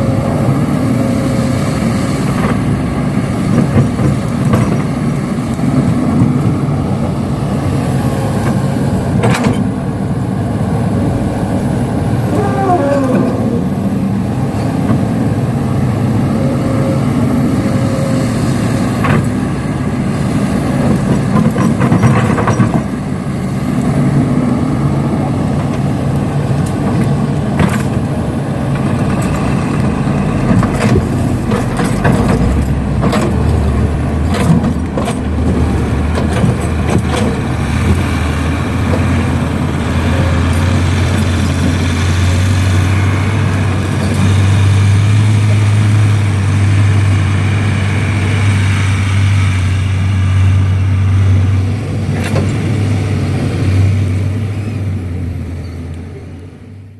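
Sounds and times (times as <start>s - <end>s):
deep steady engine hum: 0.0s - 56.9s
heavy diesel engines running: 0.0s - 56.9s
metallic clanks: 28.7s - 38.1s.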